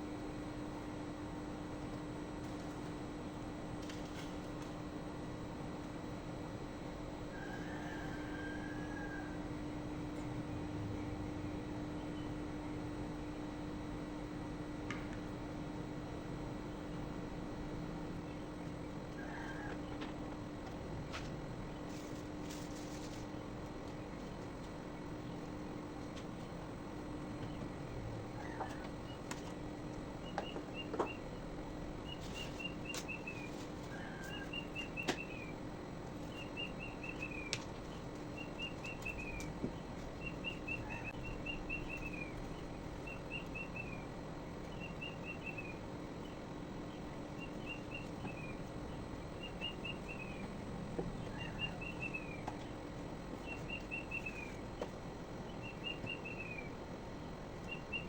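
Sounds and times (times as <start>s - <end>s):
steady low hum: 0.0s - 58.0s
bird calling: 28.3s - 29.2s, 32.0s - 35.6s, 40.2s - 44.1s, 44.7s - 54.9s, 55.5s - 56.8s, 57.6s - 58.0s.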